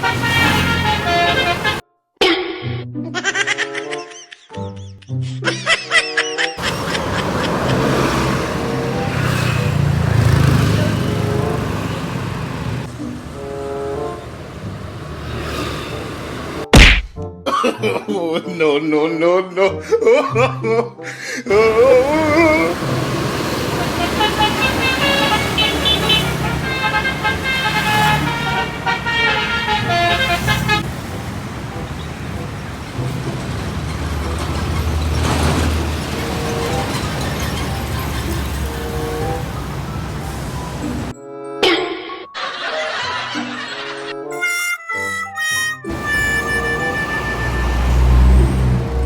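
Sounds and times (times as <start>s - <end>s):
bus engine running: 0.0s - 1.8s, 6.6s - 16.7s, 21.5s - 41.1s, 45.8s - 49.0s
heavy vehicle passing: 0.0s - 1.8s, 6.6s - 16.7s, 21.5s - 41.1s, 45.8s - 49.0s
multi-tone bus horn jingle: 0.0s - 1.9s, 6.7s - 14.9s, 21.5s - 35.3s, 35.9s - 42.5s, 44.3s - 49.0s.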